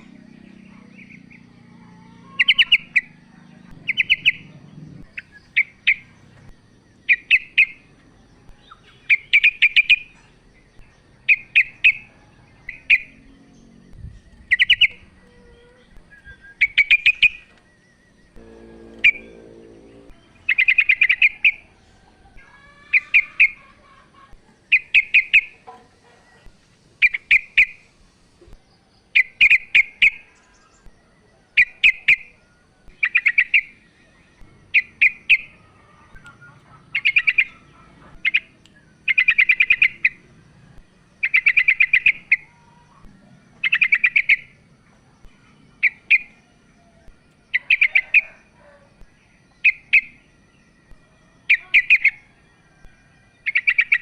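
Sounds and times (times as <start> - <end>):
bird chattering calls: 36.2 - 38.5.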